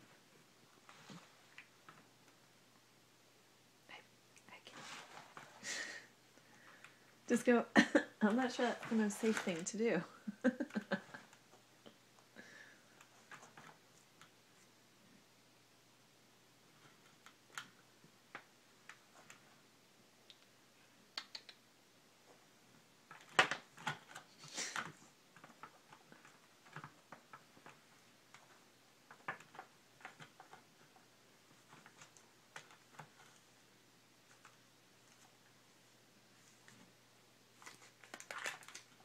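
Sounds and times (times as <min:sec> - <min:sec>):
small clicks and taps: 0:21.2 - 0:21.6.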